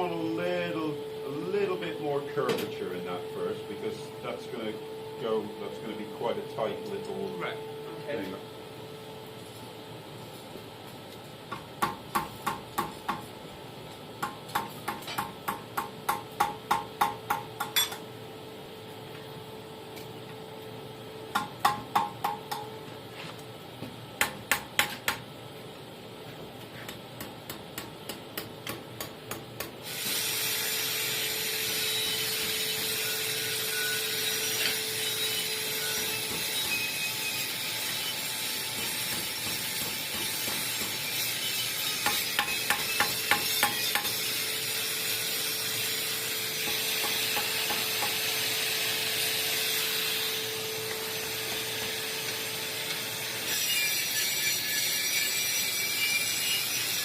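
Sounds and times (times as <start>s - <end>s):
hammer ringing on anvil: 17.0s - 18.0s
loud steady hiss: 29.8s - 35.4s.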